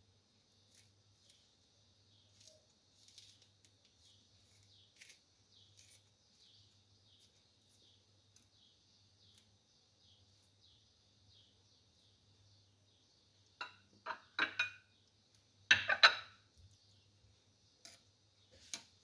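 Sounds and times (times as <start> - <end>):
dishes and utensils clinking: 13.6 - 14.9, 15.7 - 16.4.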